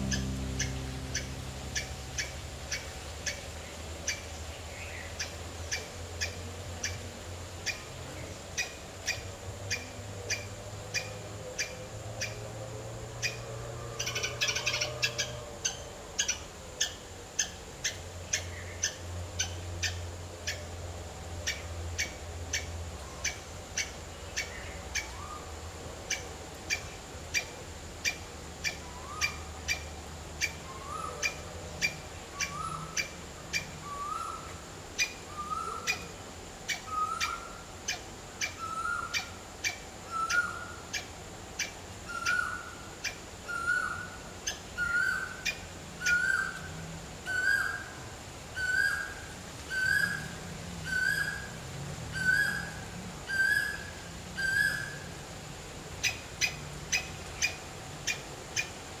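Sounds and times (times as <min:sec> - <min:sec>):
bird calling upward-slurred notes: 0:00.0 - 0:03.5.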